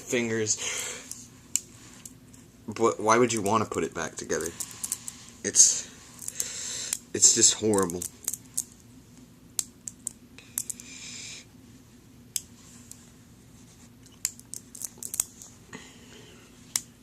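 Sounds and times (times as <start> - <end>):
magnet balls clicking together: 6.2 - 7.0, 7.6 - 8.8, 9.6 - 10.9, 14.0 - 15.5.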